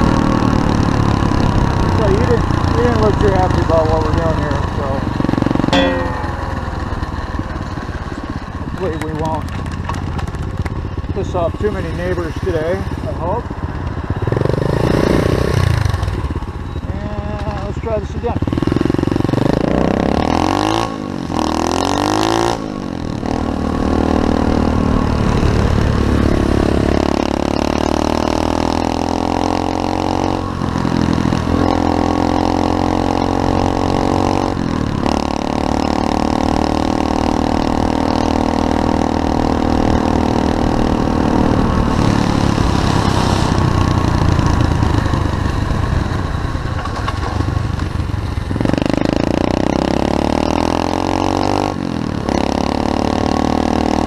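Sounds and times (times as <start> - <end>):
motorbike engine accelerating: 8.8 - 54.0.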